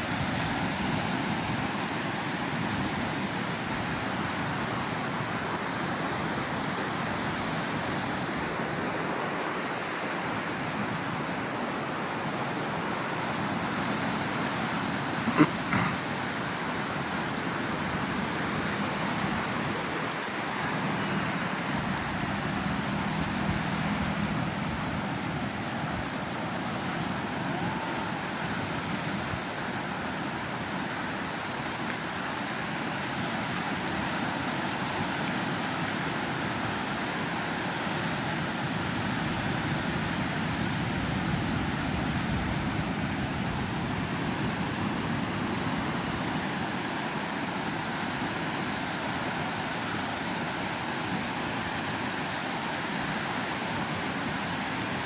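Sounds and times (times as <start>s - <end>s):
outdoor traffic noise: 11.5s - 55.0s
low engine hum: 20.6s - 28.1s.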